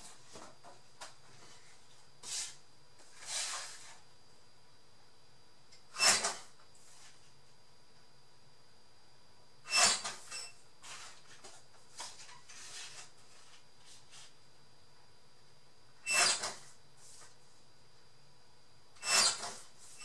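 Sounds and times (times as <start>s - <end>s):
paper rustling on a tabletop: 1.2s - 4.0s, 10.8s - 14.4s.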